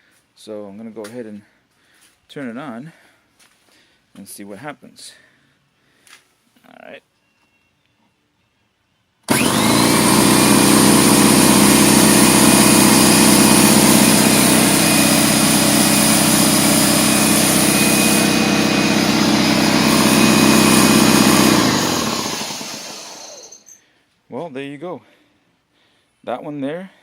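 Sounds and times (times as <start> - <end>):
air compressor running: 9.3 - 23.8.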